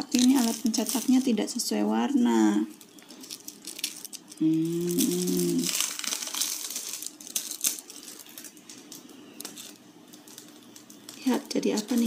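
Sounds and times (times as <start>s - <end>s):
plastic packaging crinkling: 0.0s - 1.9s, 2.5s - 12.0s
person humming: 4.4s - 5.7s.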